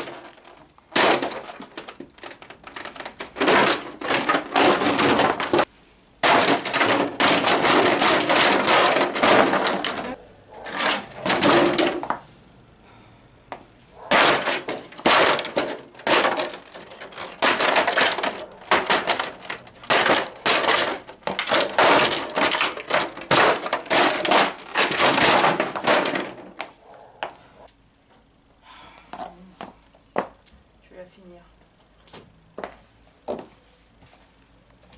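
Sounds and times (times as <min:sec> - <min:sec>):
plastic cracking and crunching: 0:00.0 - 0:12.0, 0:14.1 - 0:26.6.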